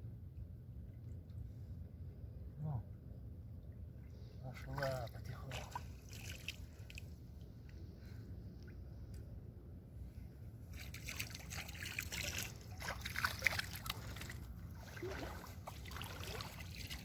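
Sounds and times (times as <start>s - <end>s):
water sloshing and splashing: 3.5s - 9.2s, 10.5s - 17.0s.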